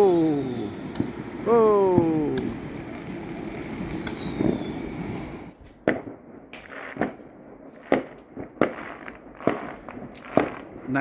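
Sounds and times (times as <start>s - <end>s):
falling whistle: 0.0s - 5.6s
fireworks bangs: 0.0s - 11.0s.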